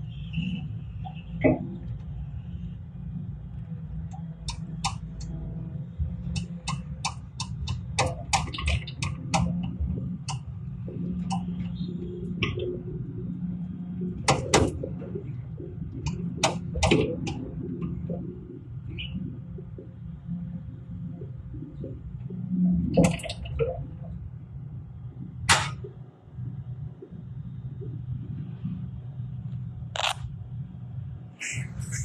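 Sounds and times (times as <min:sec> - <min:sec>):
low engine rumble: 0:00.0 - 0:32.0
sharp clicks and knocks: 0:04.1 - 0:05.4, 0:06.2 - 0:10.6, 0:14.2 - 0:15.0, 0:15.9 - 0:18.1, 0:25.5 - 0:26.0.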